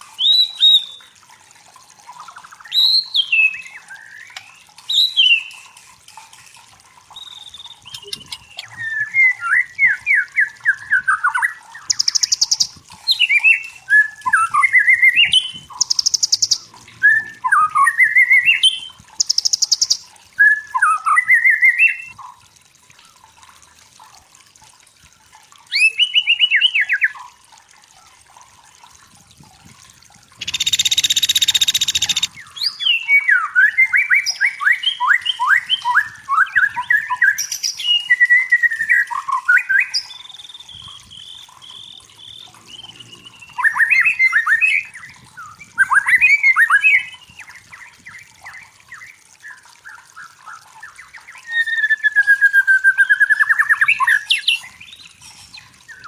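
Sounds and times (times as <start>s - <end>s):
bird singing whistled phrases: 0.2s - 1.1s, 7.1s - 22.2s, 25.7s - 27.2s, 30.4s - 56.0s.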